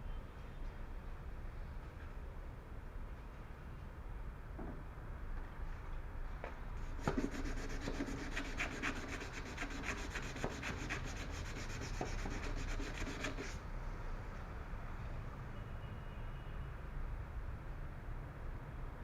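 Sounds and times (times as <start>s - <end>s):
sandpaper rubbing on car paint: 6.9s - 13.6s.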